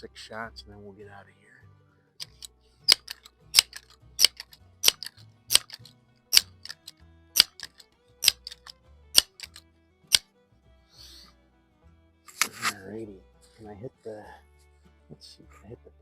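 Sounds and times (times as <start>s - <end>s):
air pistol pump lever clicking: 2.2s - 10.2s.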